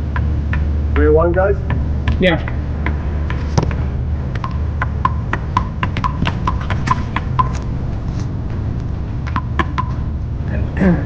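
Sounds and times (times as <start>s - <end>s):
low rumble: 0.0s - 11.0s
paddles hitting rubber ball: 0.1s - 7.8s, 9.2s - 10.1s
ball hitting wall: 1.7s - 7.7s.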